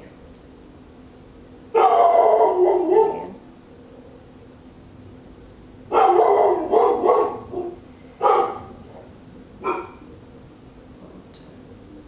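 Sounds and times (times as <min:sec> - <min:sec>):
dog barking: 0:01.8 - 0:03.4, 0:05.9 - 0:08.9, 0:09.6 - 0:10.1.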